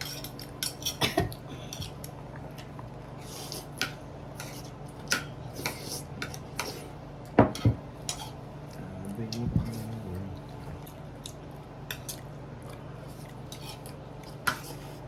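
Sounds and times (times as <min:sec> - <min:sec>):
cutlery clinking on dishes: 0:00.0 - 0:02.0.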